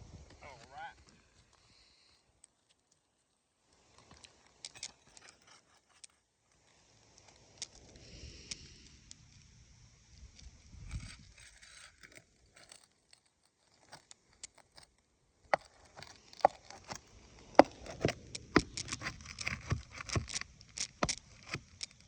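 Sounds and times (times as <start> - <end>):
tool scraping under shingles: 4.0 - 6.3, 10.8 - 22.0.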